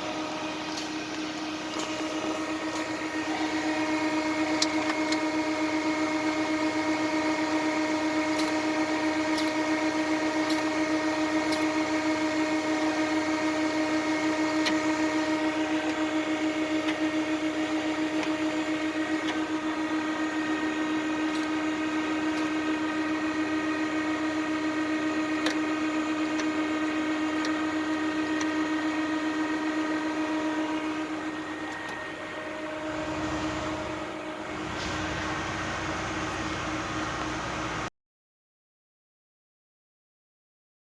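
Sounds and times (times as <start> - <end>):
lathe machine whine: 0.0 - 37.9.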